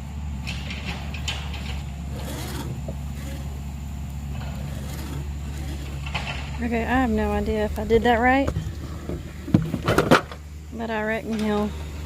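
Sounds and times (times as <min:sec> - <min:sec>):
steady low hum: 0:00.0 - 0:12.0
file scraping chainsaw chain: 0:01.5 - 0:03.6, 0:04.3 - 0:06.6.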